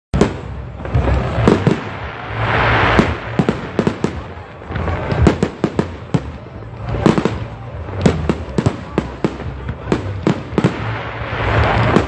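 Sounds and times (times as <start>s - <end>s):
fireworks bangs and cracks: 0.2s - 12.0s
fireworks hissing: 0.2s - 12.0s.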